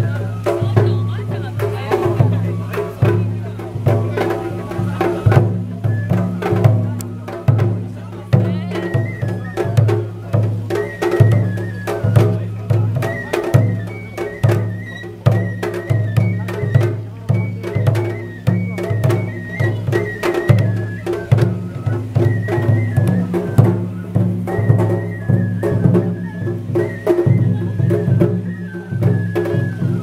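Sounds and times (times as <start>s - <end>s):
bamboo flute melody: 0.0s - 30.0s
taiko drums beating: 0.0s - 30.0s.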